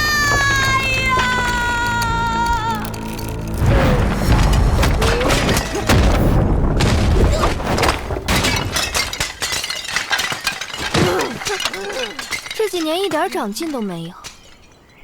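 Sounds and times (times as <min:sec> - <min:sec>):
crashes and smashing impacts: 0:02.9 - 0:14.8
low rumbling boom: 0:03.6 - 0:08.4.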